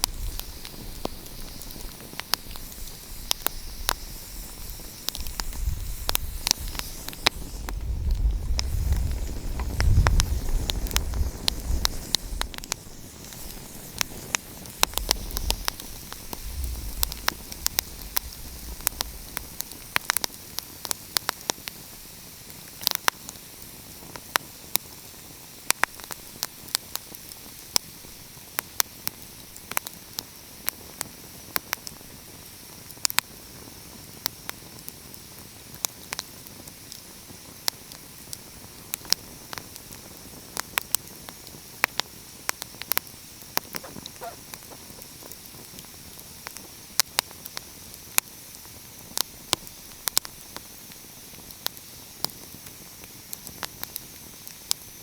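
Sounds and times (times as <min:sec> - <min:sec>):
wood fire crackling: 0:00.0 - 0:32.1, 0:37.6 - 0:55.0
low rumble: 0:14.9 - 0:19.9.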